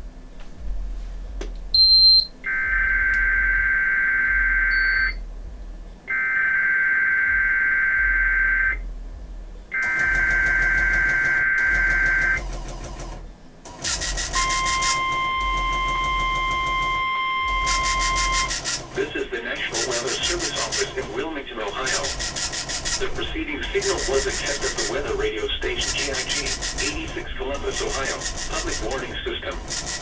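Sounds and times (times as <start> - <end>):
short high beep: 1.8 - 5.2, 14.0 - 20.9
steady warning alarm tone: 1.8 - 5.2, 6.1 - 8.8, 9.7 - 13.1, 13.7 - 30.0
warbling data header bursts: 13.7 - 30.0.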